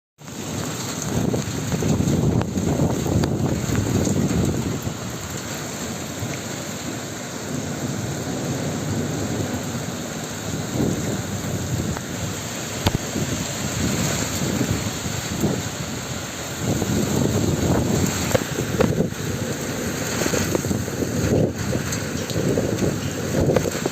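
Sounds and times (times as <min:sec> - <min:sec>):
rain falling steadily: 0:00.2 - 0:23.9
wind buffeting microphone: 0:00.5 - 0:06.3, 0:08.1 - 0:23.9
sharp tap: 0:12.8 - 0:13.0.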